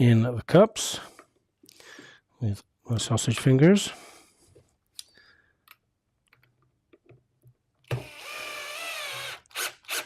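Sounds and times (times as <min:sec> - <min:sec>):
drill motor whining: 0:07.9 - 0:10.0.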